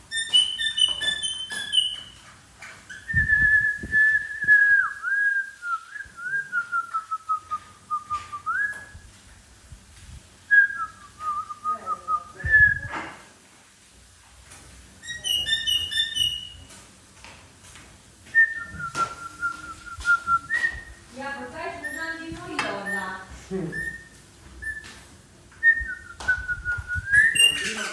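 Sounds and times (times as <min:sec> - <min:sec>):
parrot whistling and chirping: 0:00.1 - 0:02.2, 0:15.0 - 0:16.7, 0:21.6 - 0:27.9.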